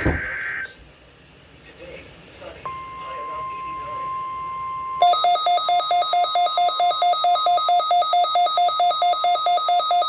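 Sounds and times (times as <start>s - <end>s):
alarm with alternating beeps: 2.7s - 10.0s.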